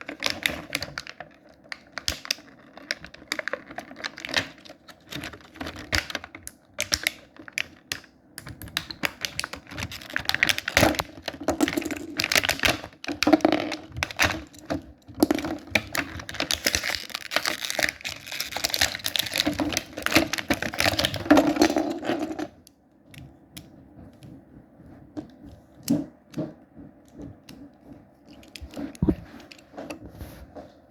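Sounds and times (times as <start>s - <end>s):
plastic packaging crinkling and tearing: 0.0s - 8.0s, 8.6s - 22.5s
small plastic parts clicking: 0.0s - 24.3s.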